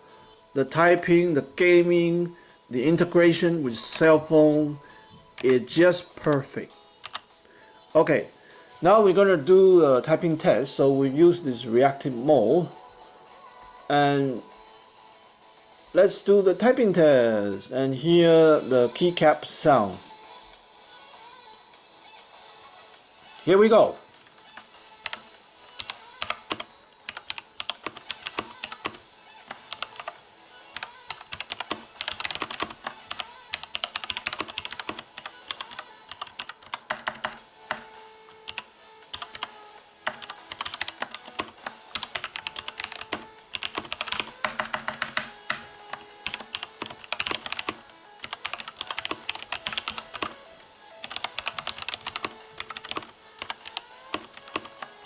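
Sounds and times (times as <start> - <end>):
mechanical keyboard typing: 5.4 - 5.6, 7.0 - 7.2, 24.2 - 30.2, 30.8 - 37.9, 38.5 - 50.4, 51.0 - 55.0.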